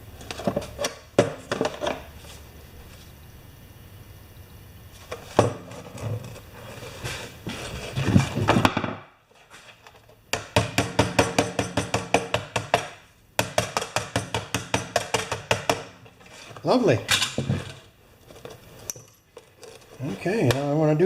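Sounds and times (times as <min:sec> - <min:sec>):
tools and metal parts clattering: 0:00.2 - 0:02.1, 0:16.1 - 0:20.6.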